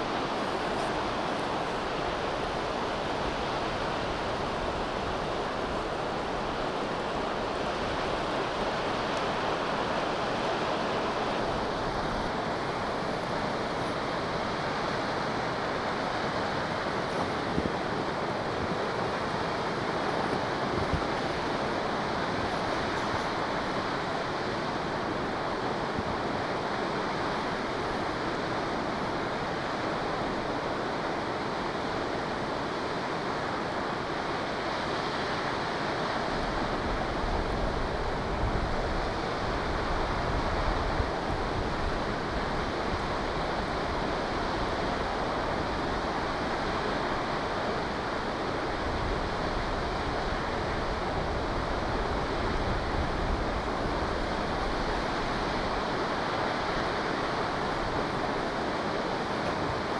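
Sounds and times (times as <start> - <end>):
wind rumbling on microphone: 15.3 - 23.9.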